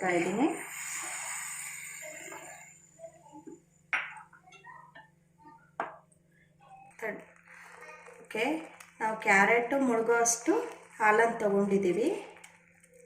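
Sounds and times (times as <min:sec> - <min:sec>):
milk hissing in hot pan: 0:00.0 - 0:03.4.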